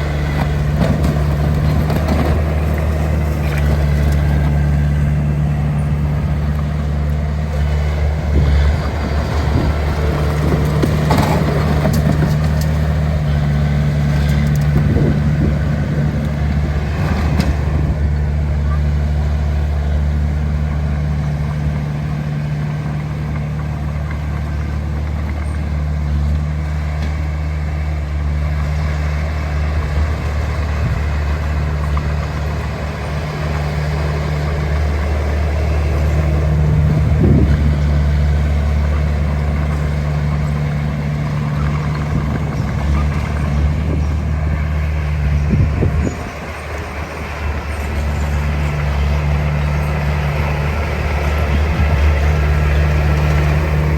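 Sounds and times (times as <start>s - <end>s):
heavy diesel engine droning: 0.0s - 53.9s.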